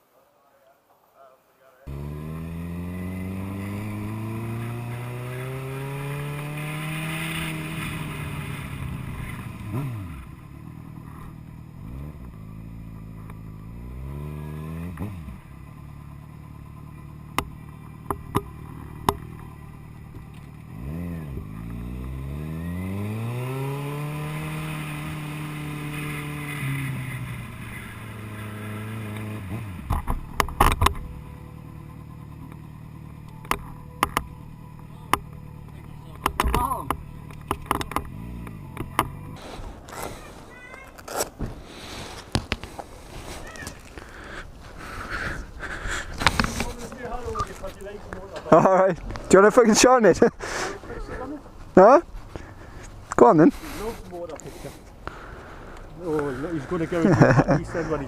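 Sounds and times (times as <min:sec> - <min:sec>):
motorcycle engine revving: 0:01.8 - 0:58.0
sharp clicks or knocks: 0:29.9 - 0:31.1, 0:33.4 - 0:34.3, 0:36.2 - 0:39.2.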